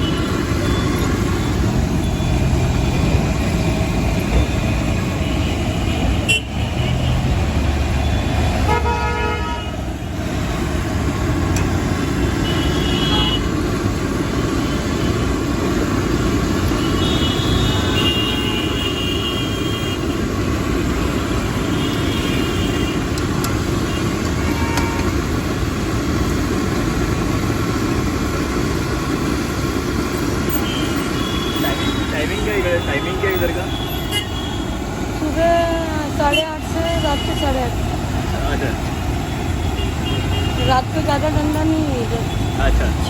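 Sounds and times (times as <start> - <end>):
street traffic: 0.0 - 43.0
vehicle horns honking: 4.4 - 7.3, 8.0 - 9.8, 12.2 - 13.5, 16.7 - 20.1, 21.6 - 25.2, 30.5 - 34.7, 36.2 - 37.7, 39.2 - 43.0.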